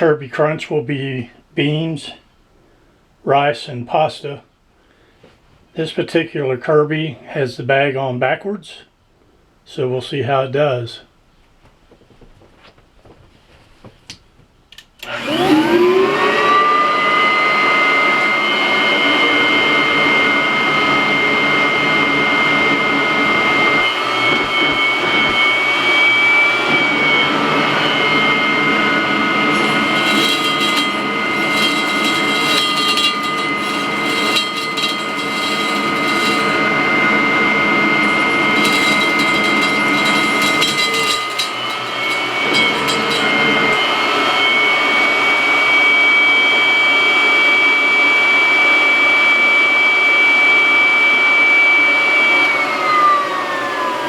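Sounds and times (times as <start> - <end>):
vacuum cleaner motor whining: 15.0 - 54.0.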